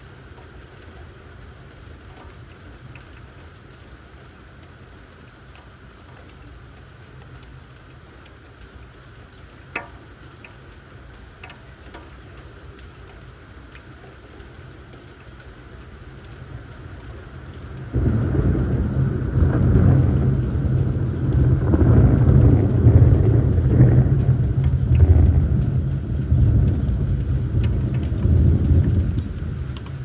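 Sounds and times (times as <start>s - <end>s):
steady rain: 0.0s - 30.0s
drops ticking on hard surface: 9.6s - 30.0s.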